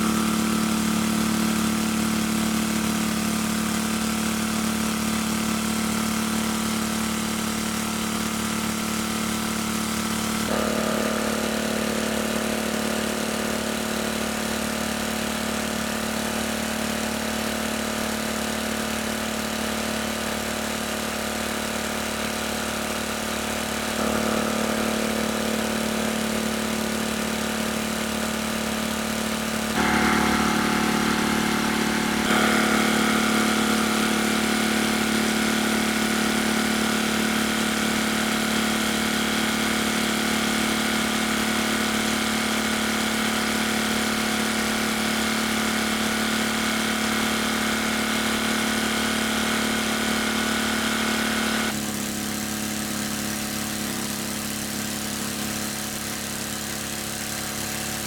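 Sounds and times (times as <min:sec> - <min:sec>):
small engine running: 0:00.0 - 0:58.0.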